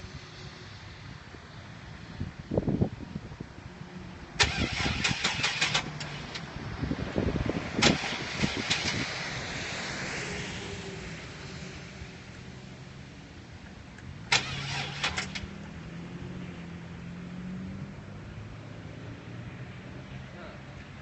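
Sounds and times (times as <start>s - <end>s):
van engine cranking: 4.4s - 6.5s, 7.8s - 9.4s, 14.3s - 15.6s.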